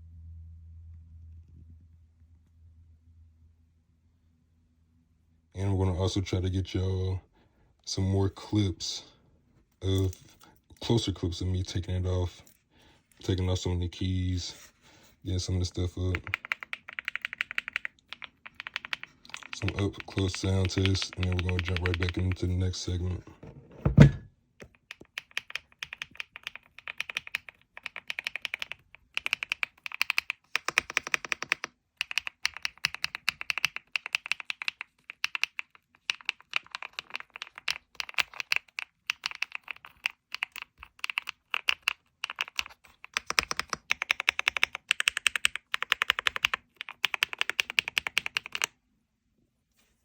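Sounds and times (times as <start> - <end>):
mechanical keyboard typing: 16.0 - 22.6, 24.6 - 48.7.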